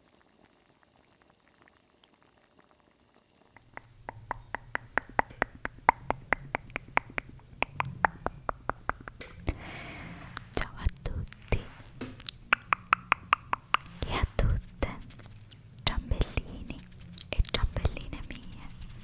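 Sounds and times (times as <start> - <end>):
fast sharp clicks: 3.6 - 9.5, 11.8 - 15.6, 16.2 - 19.0.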